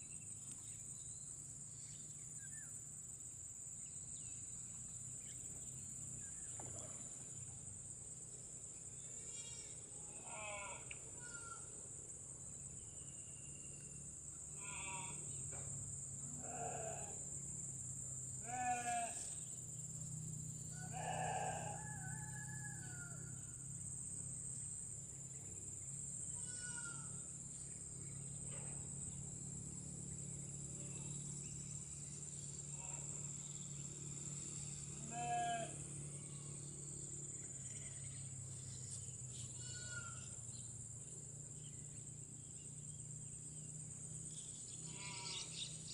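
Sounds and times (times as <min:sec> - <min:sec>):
high-pitched insect drone: 0:08.1 - 0:45.9
wavering animal calls: 0:20.8 - 0:22.0.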